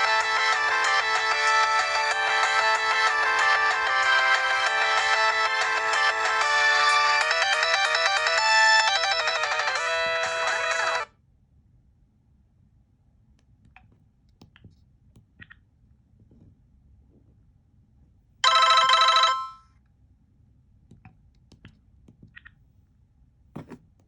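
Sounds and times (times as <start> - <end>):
polyphonic phone ringtone: 0.0 - 11.1, 18.4 - 19.7.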